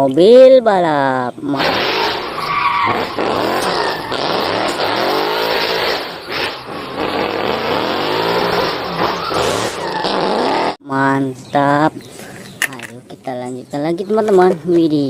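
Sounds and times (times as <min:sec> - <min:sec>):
race car engine revving: 0:01.6 - 0:10.8.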